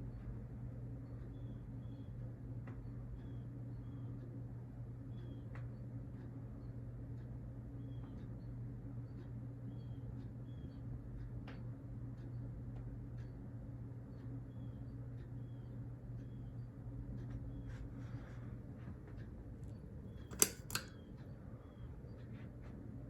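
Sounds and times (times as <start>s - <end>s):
ceiling fan humming: 0.0s - 23.0s
light click: 20.2s - 21.0s.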